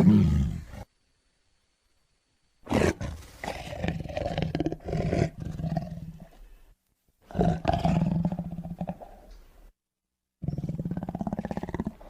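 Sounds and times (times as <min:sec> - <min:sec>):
tiger roaring: 0:00.0 - 0:00.9, 0:02.7 - 0:06.3, 0:07.3 - 0:09.2.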